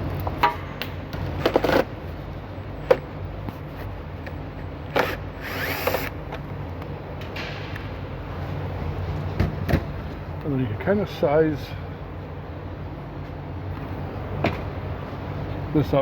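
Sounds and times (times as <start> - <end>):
power drill bursts: 5.0 - 6.1.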